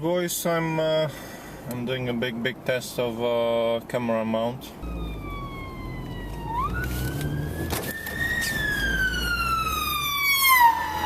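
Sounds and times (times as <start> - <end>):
car engine and road rumble: 0.0 - 11.0
ambulance siren wailing: 4.8 - 11.0.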